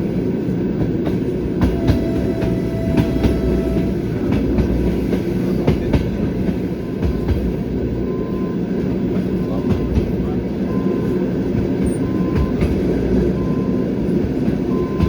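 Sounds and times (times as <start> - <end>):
train running rumble: 0.0 - 15.0
train wheels clattering over rail joints: 0.6 - 8.0, 8.8 - 10.4, 11.5 - 13.4.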